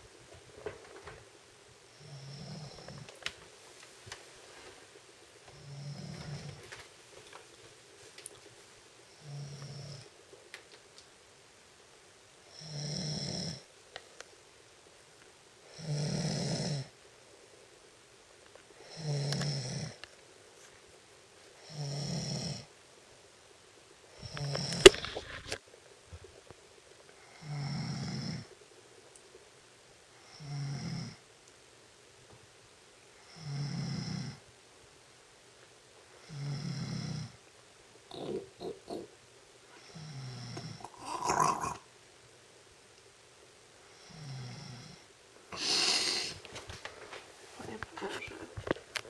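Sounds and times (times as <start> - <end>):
sharp click: 24.8 - 25.6
person snoring: 38.1 - 39.1, 39.8 - 41.9, 44.1 - 46.4.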